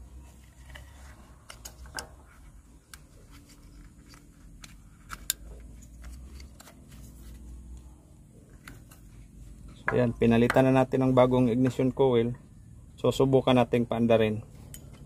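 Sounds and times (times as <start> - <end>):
hands clicking and tapping parts: 0.6 - 6.8, 9.8 - 11.8.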